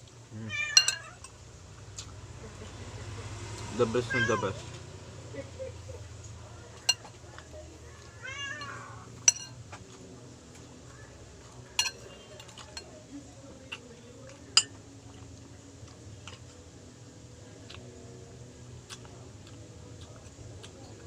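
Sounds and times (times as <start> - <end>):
cat meowing: 0.5 - 1.2, 4.0 - 4.6, 8.1 - 9.0
spoon clinking on a plate: 0.7 - 1.3, 8.6 - 9.6, 11.8 - 12.9.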